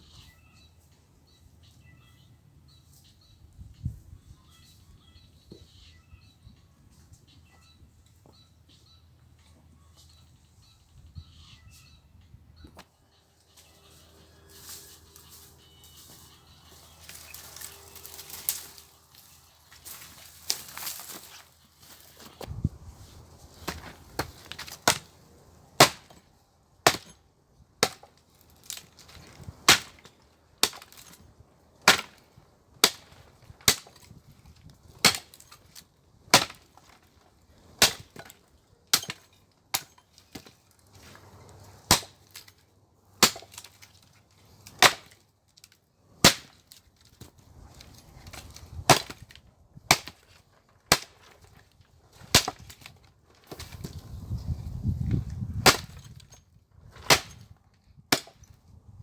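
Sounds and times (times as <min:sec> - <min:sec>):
firewood splitting strikes: 0:17.0 - 0:22.6, 0:23.4 - 0:42.6, 0:43.2 - 0:58.8.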